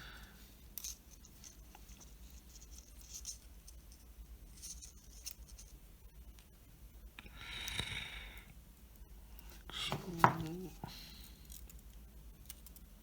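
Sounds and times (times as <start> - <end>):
wire leads clicking and rubbing: 0.7 - 6.5.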